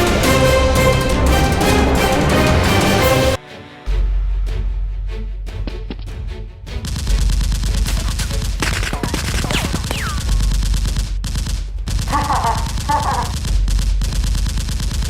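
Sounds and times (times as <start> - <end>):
background music: 0.0 - 10.2
automatic gunfire: 6.8 - 15.0.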